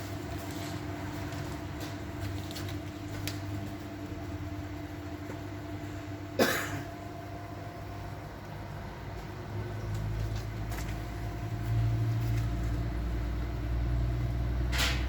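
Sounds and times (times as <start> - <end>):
electric pump humming: 0.0 - 15.0.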